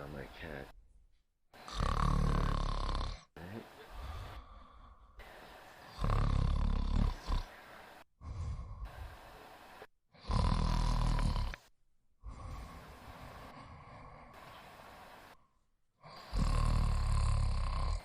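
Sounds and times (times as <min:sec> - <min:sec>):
woman snoring: 0:01.6 - 0:03.3, 0:04.0 - 0:09.2, 0:10.2 - 0:14.5, 0:16.0 - 0:18.0
soft breathing: 0:03.4 - 0:09.9, 0:11.0 - 0:16.4.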